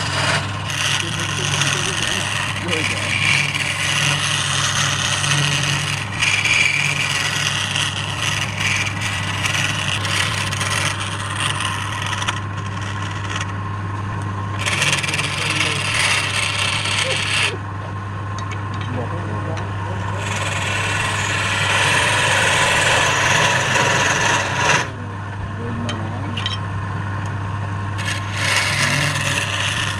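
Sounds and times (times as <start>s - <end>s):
turning tool scraping wood: 0.0s - 13.7s, 14.5s - 17.6s, 18.6s - 25.0s, 28.0s - 29.9s
wood lathe motor hum: 0.0s - 25.4s, 26.4s - 29.9s.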